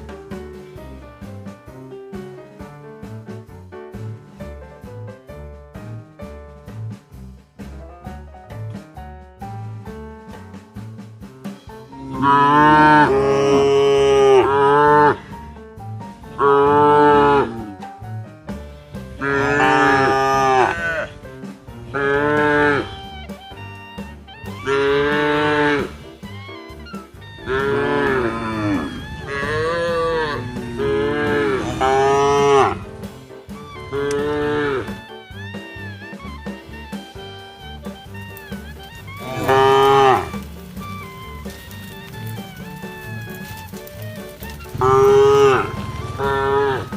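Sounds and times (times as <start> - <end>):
background music with steady beat: 0.0 - 46.9
cow mooing: 12.0 - 15.4, 16.2 - 17.8, 19.1 - 23.3, 24.4 - 26.1, 27.2 - 35.6, 38.3 - 43.8, 44.4 - 46.9.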